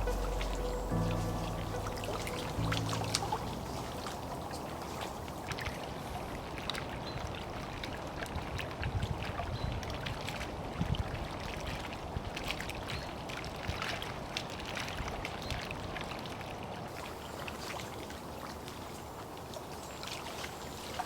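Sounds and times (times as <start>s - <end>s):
low thumps: 0.0s - 5.4s
moving water: 0.0s - 21.0s.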